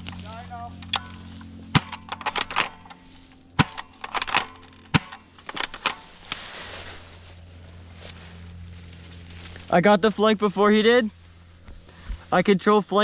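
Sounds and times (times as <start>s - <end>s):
footsteps crunching dry leaves: 0.0s - 1.8s, 2.9s - 3.6s, 5.2s - 12.4s
twigs snapping: 0.0s - 7.3s, 7.9s - 9.7s
steady low hum: 0.0s - 13.0s.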